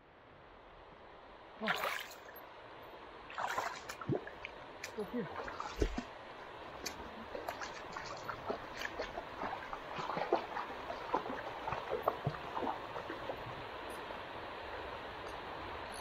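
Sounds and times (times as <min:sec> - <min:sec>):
stream water running: 0:01.2 - 0:16.0
water splashing from wading: 0:01.6 - 0:02.4, 0:03.3 - 0:14.2.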